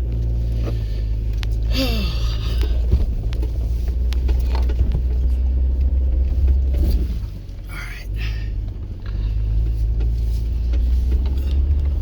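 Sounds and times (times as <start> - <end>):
engine rumbling at low revs: 0.0 - 12.0.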